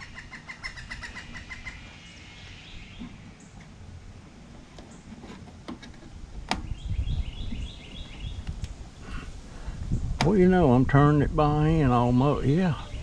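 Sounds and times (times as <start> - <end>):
bird chirping: 0.0 - 3.8, 6.5 - 9.2, 12.7 - 13.0
handling and tool noises: 4.6 - 6.7.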